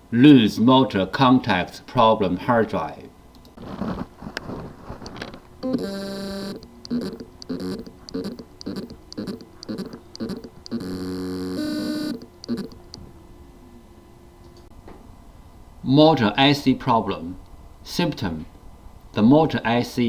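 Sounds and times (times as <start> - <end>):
hard drive motor buzzing: 5.1 - 13.0.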